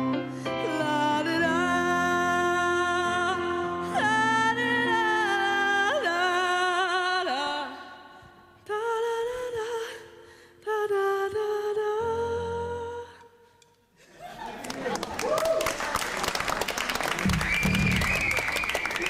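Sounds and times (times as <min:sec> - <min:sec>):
person singing wordless notes: 0:00.0 - 0:13.6.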